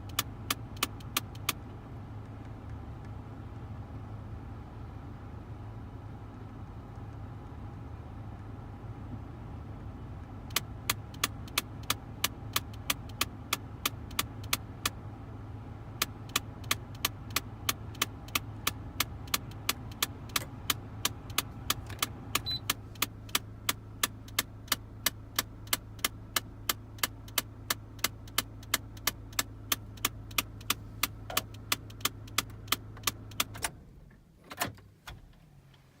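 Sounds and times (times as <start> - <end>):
flap actuator clicking: 16.0 - 33.8.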